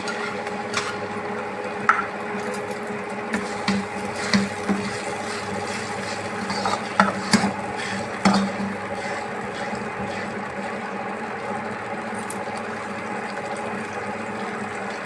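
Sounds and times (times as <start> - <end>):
steady mechanical hum: 0.0 - 15.0.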